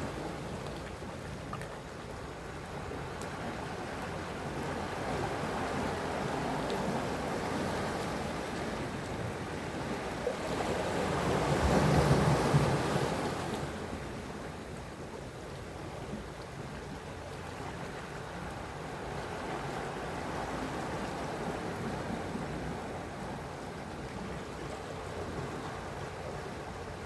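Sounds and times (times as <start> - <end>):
sea waves washing on shore: 0.0 - 27.0.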